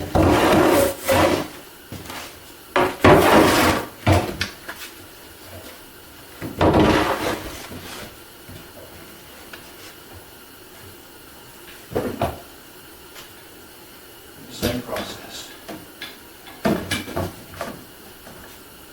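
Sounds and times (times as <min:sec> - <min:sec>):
hand plane shaving wood: 0:00.2 - 0:01.6, 0:03.2 - 0:03.9.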